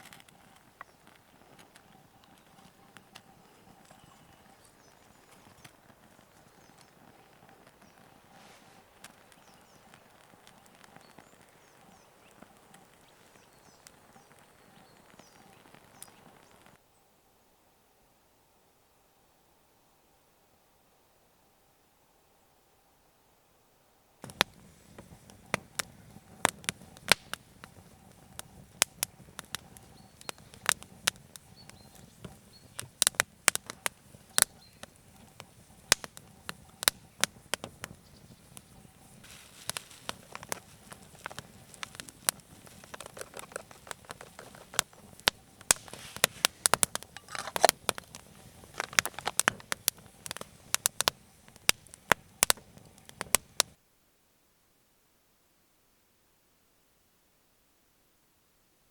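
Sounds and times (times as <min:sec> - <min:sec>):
wood fire crackling and popping: 0:00.0 - 0:16.8, 0:24.2 - 0:53.8
low hiss of burning: 0:00.0 - 0:17.1, 0:24.0 - 0:53.8.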